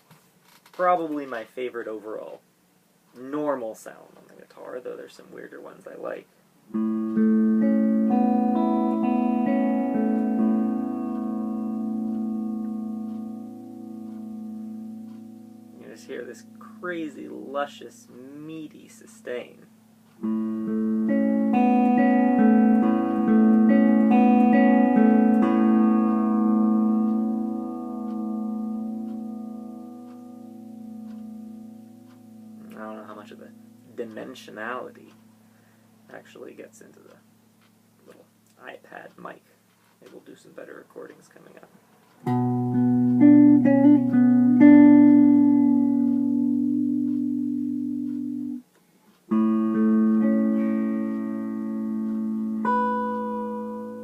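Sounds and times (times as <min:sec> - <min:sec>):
clean electric guitar notes: 0:06.7 - 0:18.3, 0:20.2 - 0:35.6, 0:42.2 - 0:48.6, 0:49.3 - 0:54.0.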